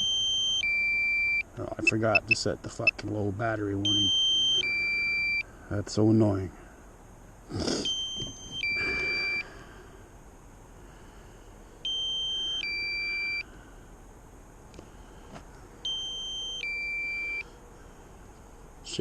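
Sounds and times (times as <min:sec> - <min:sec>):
two-tone falling warning beep: 0:00.0 - 0:03.0, 0:03.8 - 0:05.5, 0:07.8 - 0:09.5, 0:11.8 - 0:13.5, 0:15.8 - 0:17.5.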